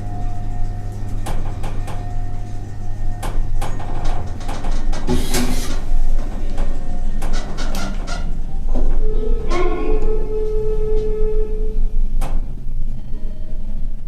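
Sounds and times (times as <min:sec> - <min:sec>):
elevator hum: 0:00.0 - 0:14.0.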